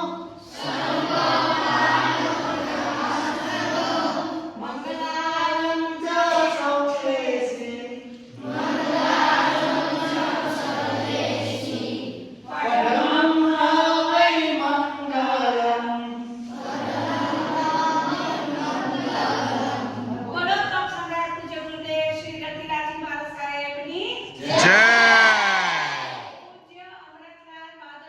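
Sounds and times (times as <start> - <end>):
children chanting in unison: 0.2 - 5.0, 8.3 - 15.6, 16.4 - 20.2, 24.4 - 26.4.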